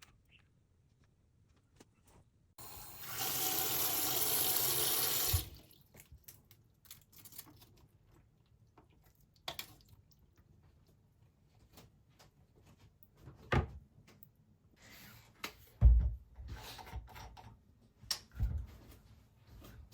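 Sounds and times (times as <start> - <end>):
water running from a tap: 2.6 - 5.7.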